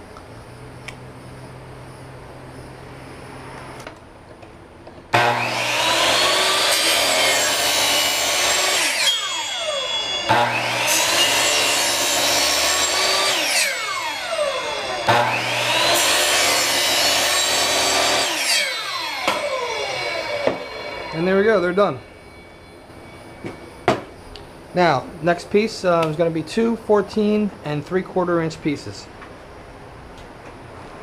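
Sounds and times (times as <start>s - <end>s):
power saw cutting pipe: 5.1s - 23.6s.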